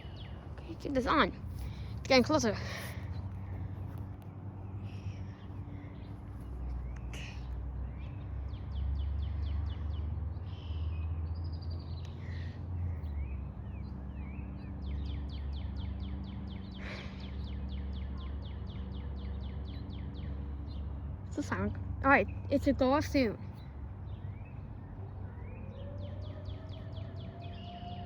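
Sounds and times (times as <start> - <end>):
bird chirps: 0.0 - 4.0
steady low rumble: 0.0 - 8.8.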